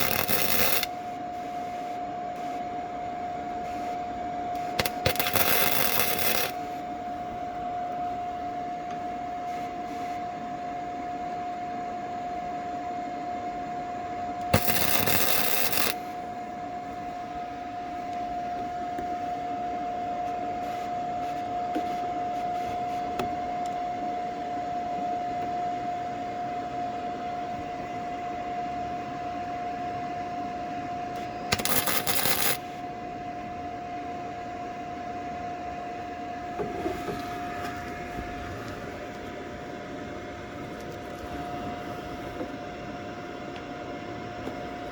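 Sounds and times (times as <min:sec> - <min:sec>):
welding arc crackling: 0:00.0 - 0:01.9, 0:04.6 - 0:06.8, 0:14.5 - 0:16.1, 0:31.5 - 0:32.8
steady high hum: 0:00.0 - 0:44.9.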